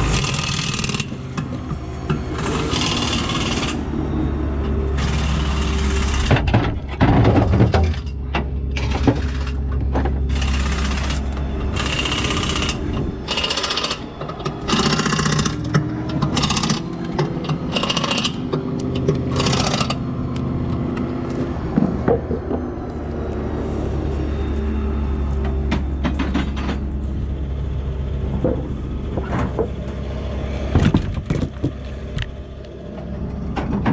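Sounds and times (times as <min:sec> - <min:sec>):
steady low hum: 0:00.0 - 0:33.9
impact wrench rattling bursts: 0:02.4 - 0:03.8, 0:10.3 - 0:14.0, 0:16.3 - 0:16.9, 0:17.7 - 0:18.4, 0:19.3 - 0:20.0.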